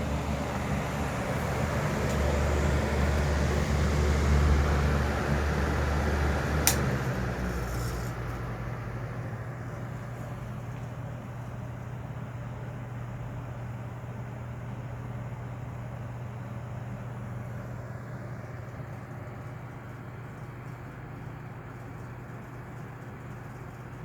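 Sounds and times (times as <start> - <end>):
exhaust fan air rush: 0.0 - 20.6
low motor hum: 0.0 - 24.0
sharp switch click: 6.7 - 6.9.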